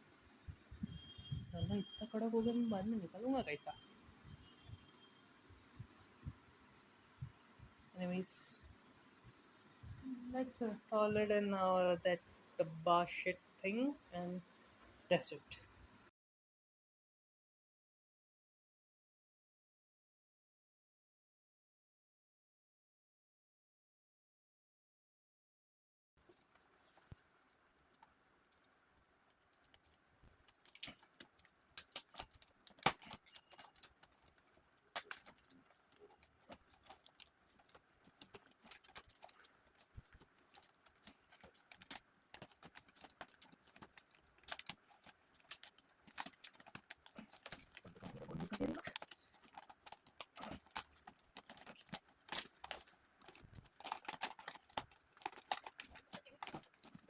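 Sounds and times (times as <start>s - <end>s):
hands handling computer hardware: 26.2s - 57.0s.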